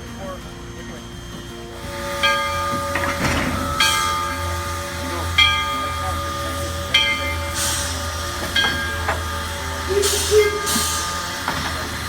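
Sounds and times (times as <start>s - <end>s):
steam locomotive low hum: 0.0s - 12.0s
steam hissing: 0.7s - 12.0s.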